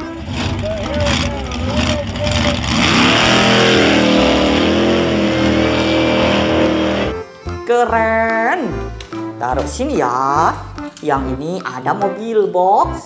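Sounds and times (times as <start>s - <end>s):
road noise: 0.0s - 7.2s
vehicle engine running: 0.0s - 7.2s.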